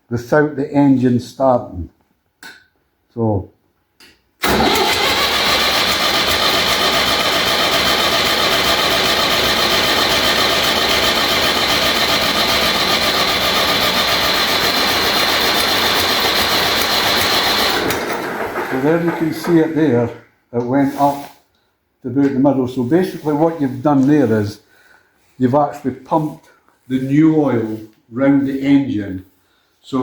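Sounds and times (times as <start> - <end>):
diesel engine cranking on starter: 4.4 - 19.9.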